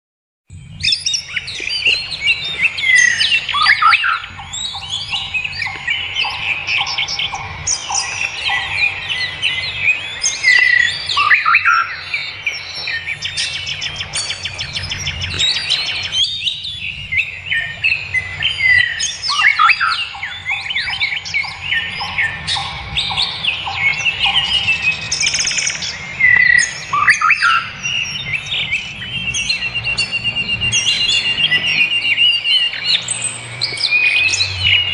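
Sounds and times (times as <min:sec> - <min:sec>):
birds singing: 0:00.5 - 0:34.9.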